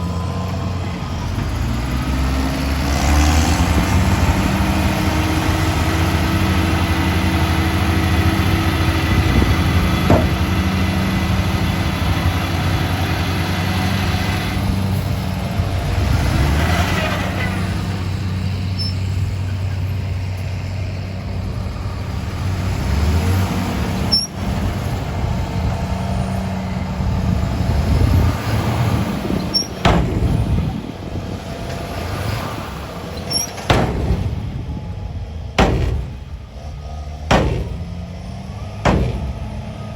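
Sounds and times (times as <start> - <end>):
heavy diesel engines running: 0.0 - 39.9
sharp knocks: 9.1 - 11.0, 29.6 - 30.8, 33.3 - 34.8, 35.6 - 36.7, 37.3 - 39.9.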